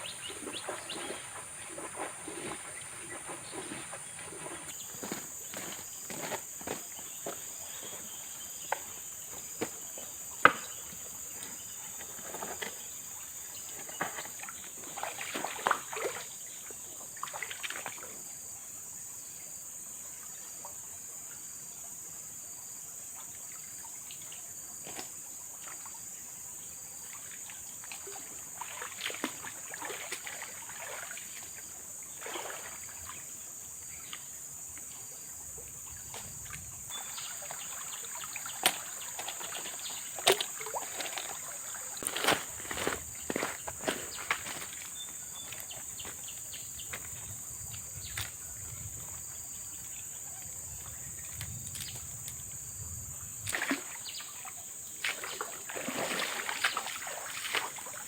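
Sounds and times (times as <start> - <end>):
water splashing: 0.0 - 16.3, 27.9 - 33.4, 35.6 - 48.6, 53.5 - 58.0
high-pitched drone of insects: 32.2 - 58.0.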